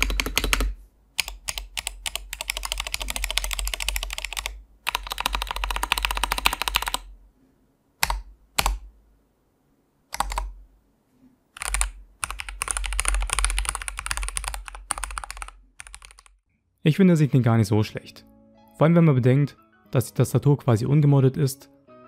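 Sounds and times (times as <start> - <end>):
mechanical keyboard typing: 0.0 - 7.1, 8.0 - 8.9, 10.1 - 10.6, 11.6 - 16.4.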